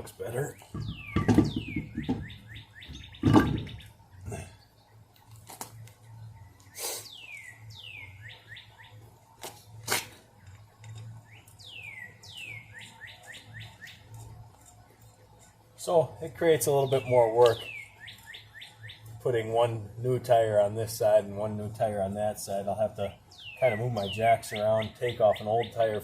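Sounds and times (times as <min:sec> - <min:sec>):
low steady hum: 0:00.0 - 0:26.0
loud thumps: 0:00.6 - 0:03.9.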